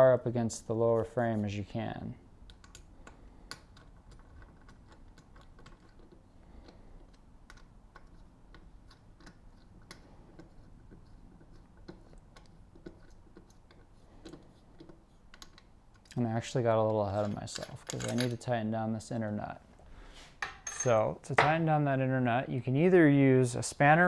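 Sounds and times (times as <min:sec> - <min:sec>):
hand tools clicking and tapping: 0:02.4 - 0:16.2, 0:20.4 - 0:21.6.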